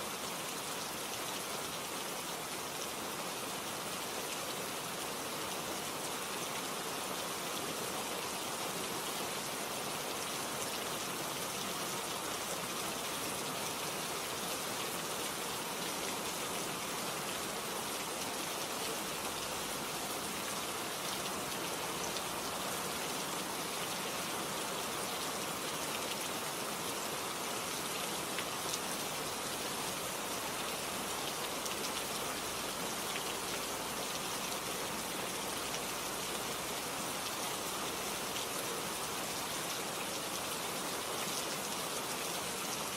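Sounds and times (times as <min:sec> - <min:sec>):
steady rain hiss: 0:00.0 - 0:42.9.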